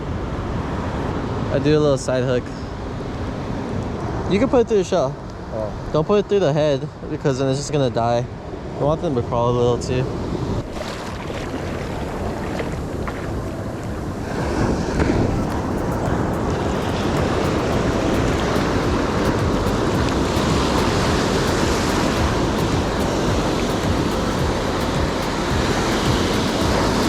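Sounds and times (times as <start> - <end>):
ocean surf on sandy beach: 0.0 - 27.0
wind buffeting microphone: 10.0 - 27.0.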